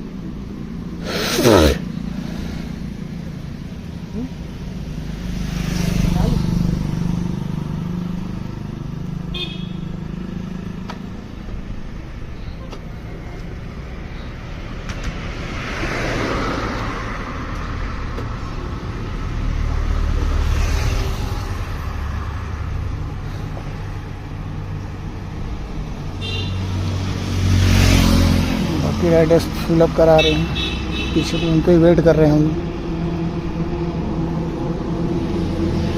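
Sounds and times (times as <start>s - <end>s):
vehicle engines humming: 0.0s - 35.9s
vehicles passing: 0.0s - 35.9s
car horn toot: 9.3s - 9.9s, 26.2s - 26.7s, 30.2s - 31.6s.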